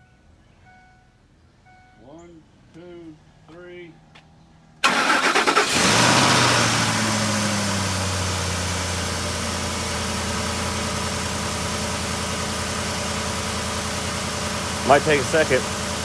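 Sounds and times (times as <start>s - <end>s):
car engine idling: 4.8s - 16.0s.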